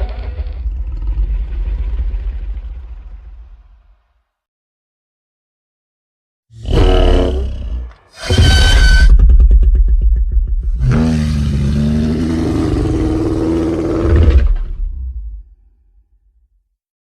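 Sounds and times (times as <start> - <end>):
rattling pulsing growl: 0.0 - 4.0, 6.6 - 15.4
low rasping roar: 6.6 - 9.2, 10.5 - 15.2.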